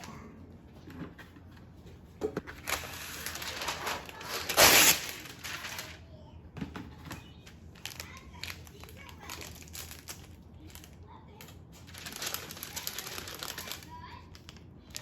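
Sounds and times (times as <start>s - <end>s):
food packaging rustling: 2.3s - 6.1s, 6.9s - 15.0s.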